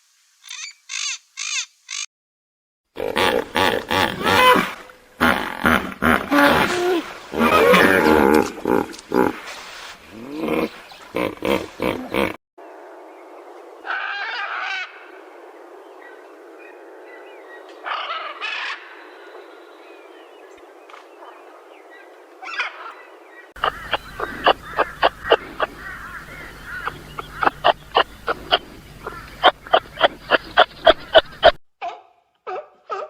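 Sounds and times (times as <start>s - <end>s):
steady hiss: 0.0s - 0.6s
rapid sharp repeated calls: 0.4s - 2.1s, 23.6s - 31.6s
short bird-like calls: 0.4s - 2.1s, 23.6s - 31.6s.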